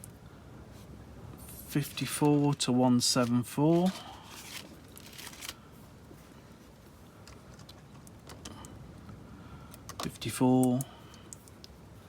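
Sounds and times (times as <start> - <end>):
faint rustling: 0.7 - 8.0
wire clicking into terminals: 9.7 - 11.8.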